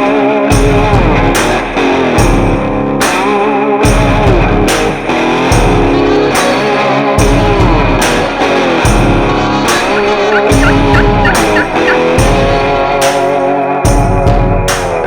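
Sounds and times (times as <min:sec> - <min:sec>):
drum beat: 0:09.9 - 0:12.5
bending electric guitar lead: 0:09.9 - 0:12.6.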